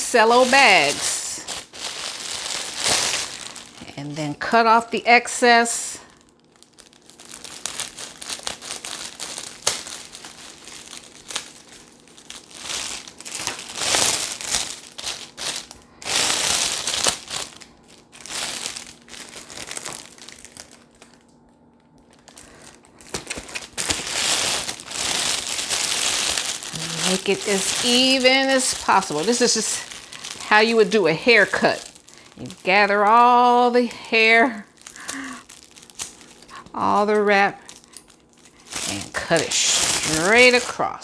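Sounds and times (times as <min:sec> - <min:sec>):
cellophane crinkling and rustling: 0:00.0 - 0:41.0.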